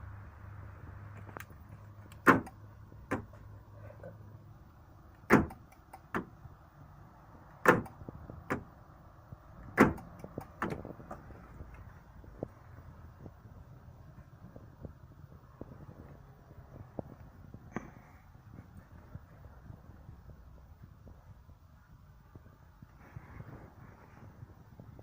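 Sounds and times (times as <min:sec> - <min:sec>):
door-lock actuators clunking: 0:02.0 - 0:03.4, 0:05.1 - 0:06.4, 0:07.6 - 0:08.8, 0:09.6 - 0:10.8.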